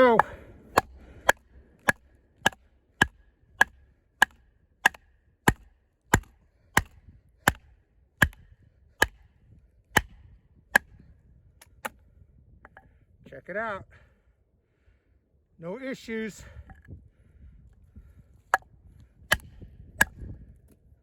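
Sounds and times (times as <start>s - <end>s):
knife chopping into wood: 0.1s - 7.6s, 8.2s - 8.4s, 9.0s - 9.2s, 19.3s - 20.2s.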